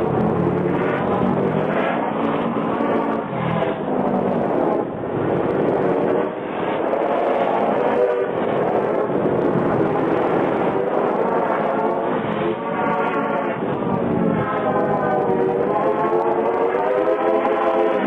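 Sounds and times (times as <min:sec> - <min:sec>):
muffled vehicle running: 0:00.0 - 0:07.0.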